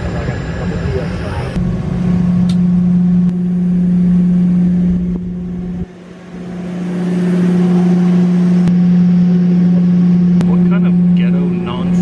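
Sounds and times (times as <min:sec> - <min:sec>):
jet engine hum in cabin: 0:00.0 - 0:12.0.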